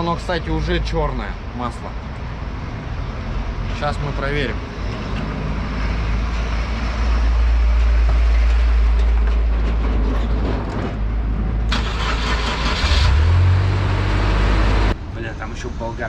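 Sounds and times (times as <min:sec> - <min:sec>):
petrol engine running: 0:11.7 - 0:15.0.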